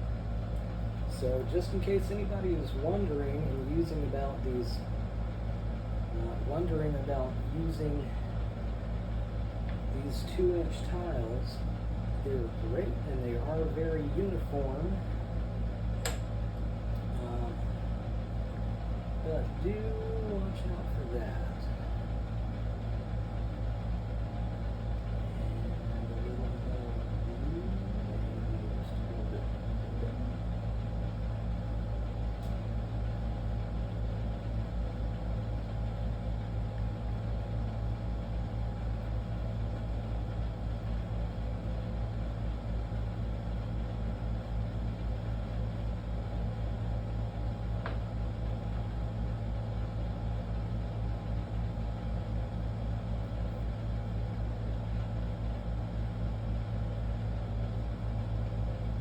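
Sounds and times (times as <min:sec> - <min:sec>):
pulsing low machine hum: 0:00.0 - 0:59.0.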